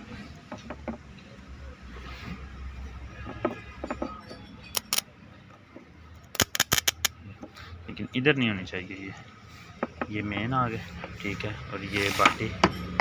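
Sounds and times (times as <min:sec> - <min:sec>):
metal parts knocking: 0:03.2 - 0:05.1, 0:06.3 - 0:07.1
sharp metal clicks: 0:04.7 - 0:05.1, 0:06.2 - 0:07.2.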